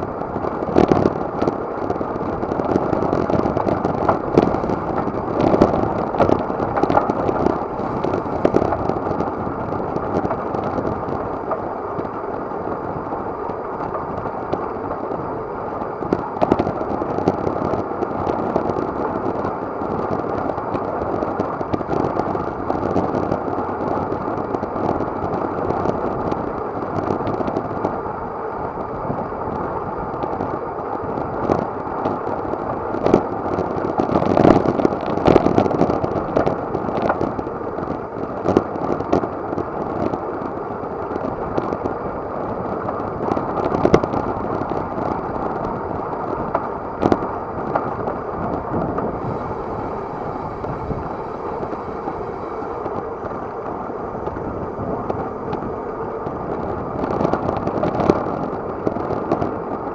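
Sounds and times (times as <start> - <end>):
wind buffeting microphone: 0.0 - 59.9
bike rattling and knocking: 0.2 - 15.0, 38.6 - 59.9.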